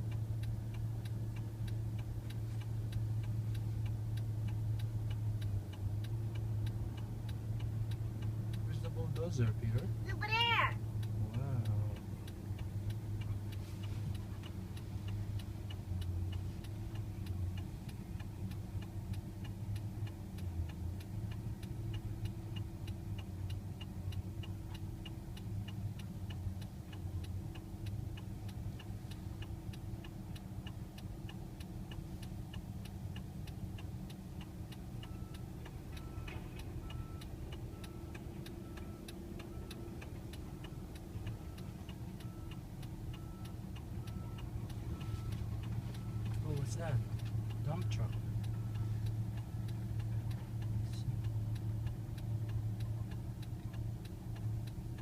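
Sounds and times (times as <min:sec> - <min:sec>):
bulldozer diesel engine running: 0:00.0 - 0:55.0
fast even ticking: 0:00.0 - 0:55.0.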